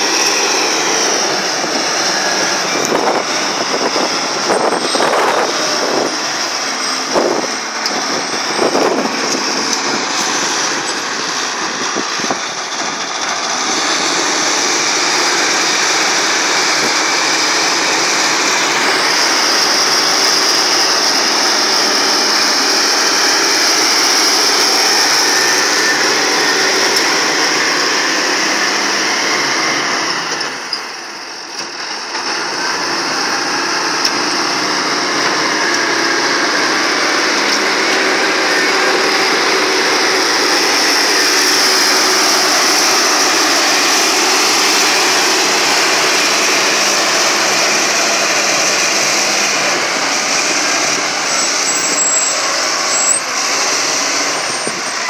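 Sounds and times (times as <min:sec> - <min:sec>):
excavator engine running: 0:00.0 - 0:55.0.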